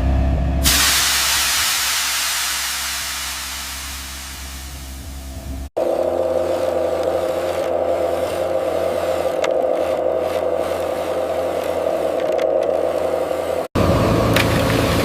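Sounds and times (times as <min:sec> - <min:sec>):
excavator engine running: 0:00.0 - 0:15.0.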